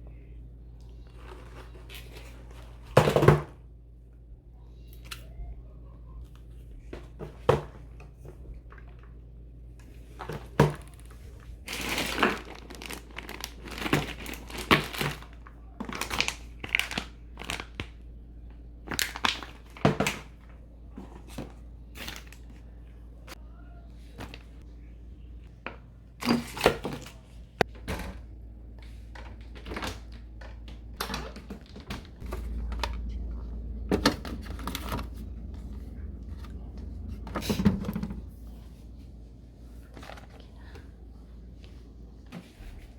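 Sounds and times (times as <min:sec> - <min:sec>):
plastic packaging crinkling: 0:10.2 - 0:18.0, 0:18.8 - 0:20.5
steady low hum: 0:27.1 - 0:42.9.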